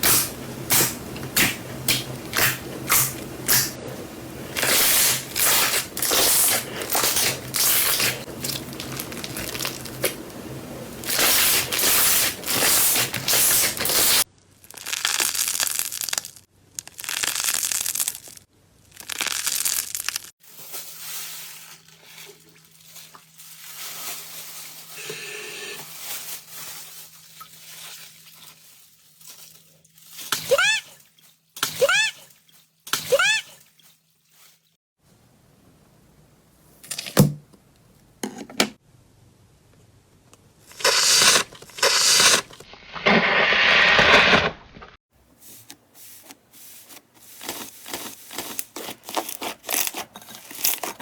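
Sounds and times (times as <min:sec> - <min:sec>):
slime crackling and squishing: 0:07.0 - 0:10.1, 0:13.7 - 0:21.4.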